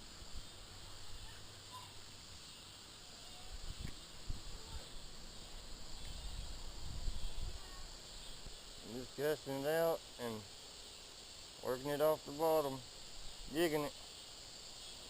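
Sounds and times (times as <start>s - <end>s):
crickets chorus: 0.0s - 15.0s
faint chirps: 0.0s - 15.0s.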